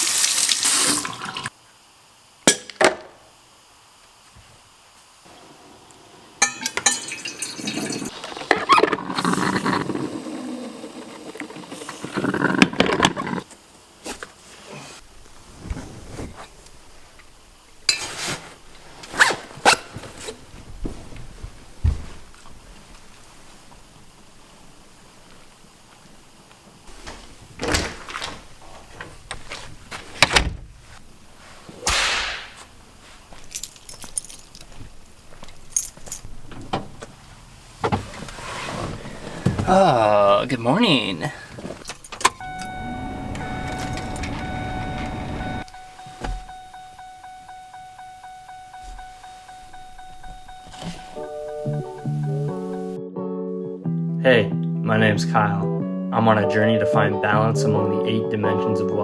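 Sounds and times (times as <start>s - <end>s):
water running: 0.0s - 1.5s, 6.3s - 13.4s
kitchenware clinking: 6.4s - 8.7s
loud bang: 31.8s - 32.6s
handling clicks and knocks: 33.4s - 37.2s, 41.5s - 42.7s.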